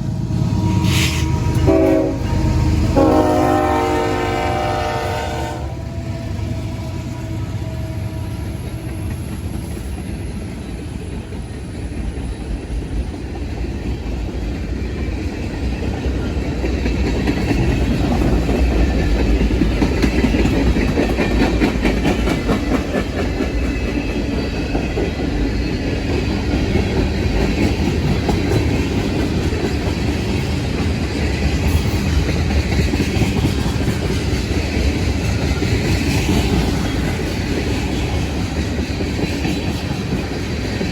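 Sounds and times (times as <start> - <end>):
freight train rolling past: 0.0 - 40.9
wheels clacking over rail joints: 5.8 - 40.9.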